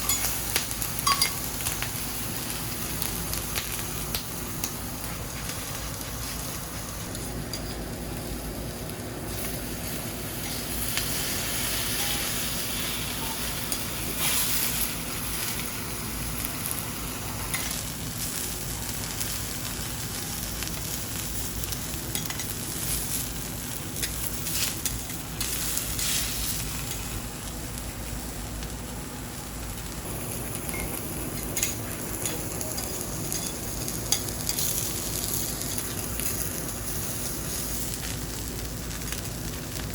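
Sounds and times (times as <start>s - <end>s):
food sizzling on griddle: 0.0s - 39.9s.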